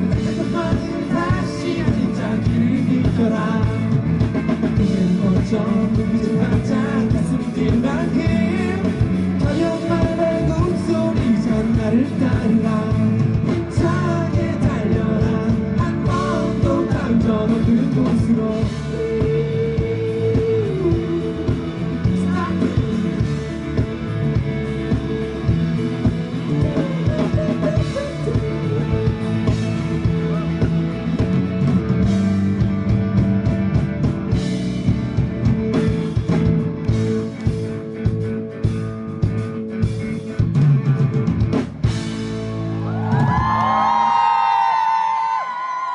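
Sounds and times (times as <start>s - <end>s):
drum kit hitting: 0.0s - 45.1s
bass guitar: 0.0s - 45.9s
electric guitars: 0.0s - 45.9s.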